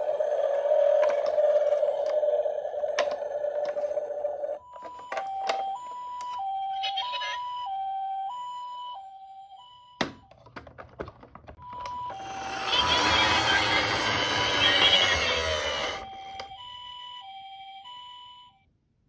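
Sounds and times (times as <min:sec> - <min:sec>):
toy two-tone siren: 0:00.0 - 0:10.4, 0:11.6 - 0:18.6
rising rushing noise: 0:12.1 - 0:16.2.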